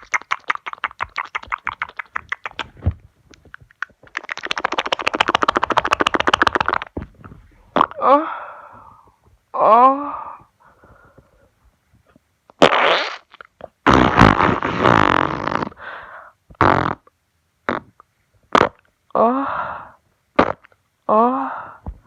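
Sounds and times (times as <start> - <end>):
fart noises: 7.8 - 8.0, 12.6 - 15.8, 16.6 - 17.1, 17.7 - 18.9, 20.4 - 20.8.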